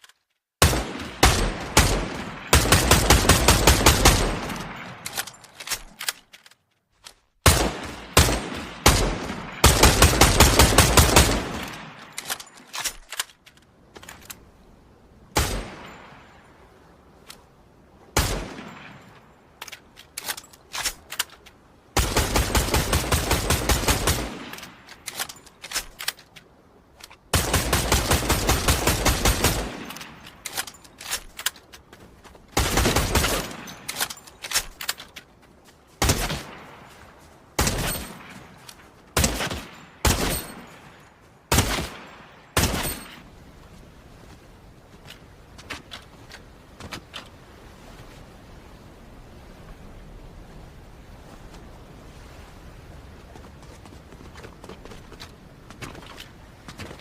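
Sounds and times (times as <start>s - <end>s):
rifle gunshots echoing: 7.4s - 12.2s.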